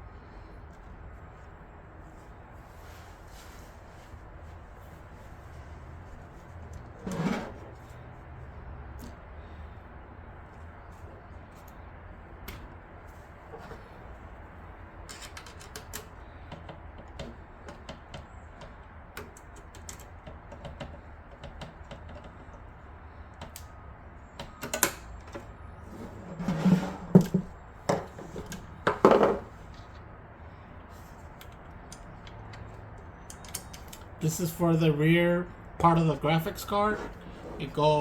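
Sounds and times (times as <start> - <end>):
knocks and scrapes: 6.8 - 8.0, 25.8 - 30.0, 36.8 - 37.8.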